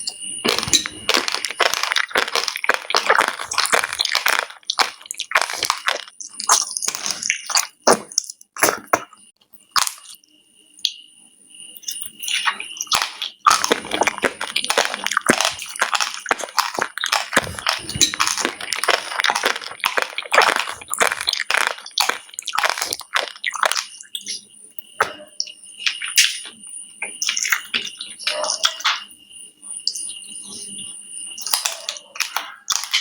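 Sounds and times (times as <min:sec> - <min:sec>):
crunching of hard seeds: 0:00.4 - 0:10.2, 0:12.3 - 0:24.4, 0:31.4 - 0:33.0
wet chewing mouth sounds: 0:00.5 - 0:08.9, 0:12.9 - 0:24.4.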